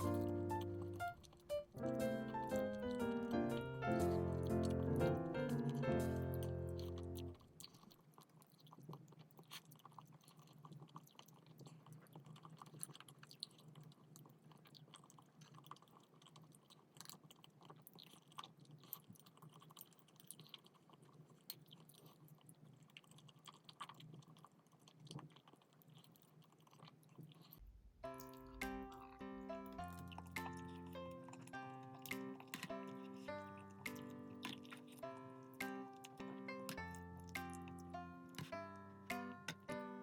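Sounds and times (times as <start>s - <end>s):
background music: 0.0s - 7.3s, 28.1s - 40.0s
close-up chewing: 0.0s - 40.0s.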